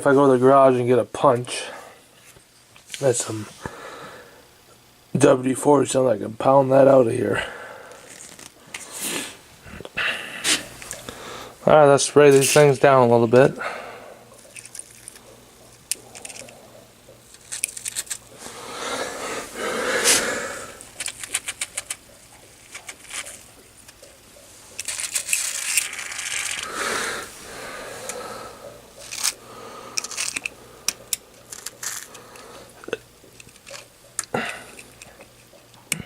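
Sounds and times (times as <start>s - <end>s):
aerosol spray hissing: 26.6s - 28.6s.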